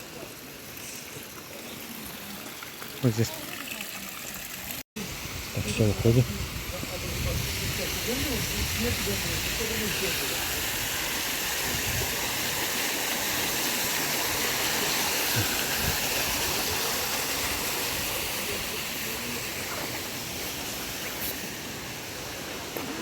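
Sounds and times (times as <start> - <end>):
mountain stream rushing: 7.8 - 23.0.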